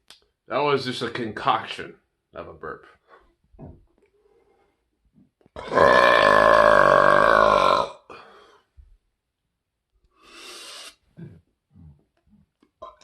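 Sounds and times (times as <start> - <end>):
man burping: 5.6 - 8.2, 11.2 - 12.2, 12.8 - 13.0
short breath: 10.1 - 12.0.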